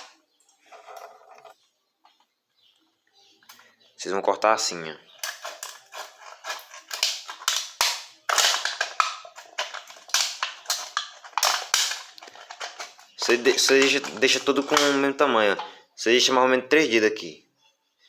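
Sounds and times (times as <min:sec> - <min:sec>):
scissors snipping metal can: 0:05.2 - 0:15.0
metallic crinkles: 0:05.2 - 0:15.1.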